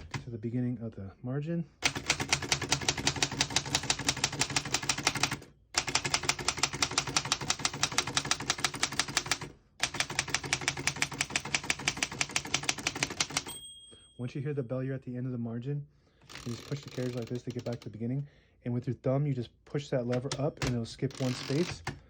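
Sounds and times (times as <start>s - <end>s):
manual typewriter typing: 0.0s - 0.3s, 1.8s - 13.5s, 16.2s - 17.9s, 20.1s - 22.0s.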